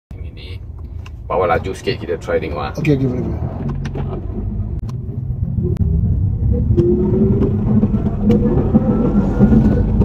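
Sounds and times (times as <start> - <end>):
car engine and road rumble: 0.1 - 10.0
faint rising whine: 3.2 - 10.0.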